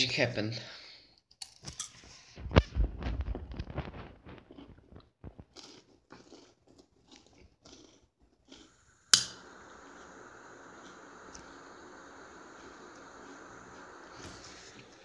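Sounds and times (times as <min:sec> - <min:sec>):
lighter clicking and crackling: 0:09.0 - 0:15.0.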